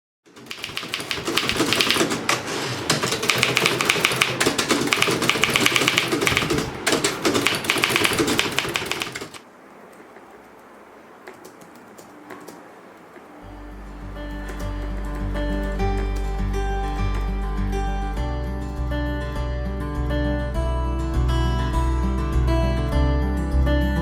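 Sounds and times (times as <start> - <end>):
manual typewriter typing: 0.3 - 9.4.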